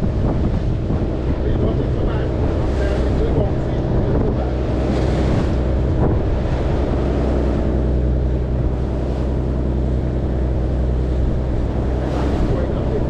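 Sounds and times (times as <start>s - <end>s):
boat engine running: 0.0s - 13.0s
sea noise: 0.0s - 13.0s
wind buffeting microphone: 0.0s - 13.0s.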